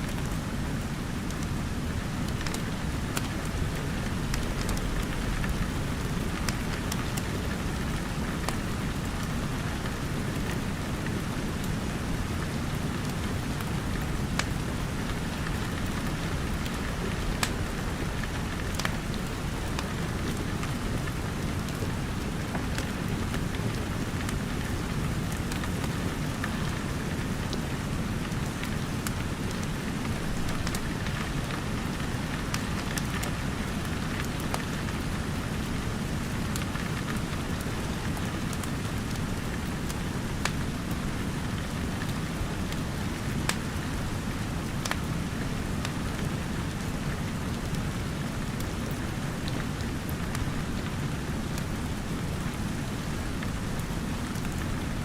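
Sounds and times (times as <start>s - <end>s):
steady rain: 0.0s - 55.0s
wood fire crackling and popping: 2.0s - 11.6s, 12.4s - 45.1s.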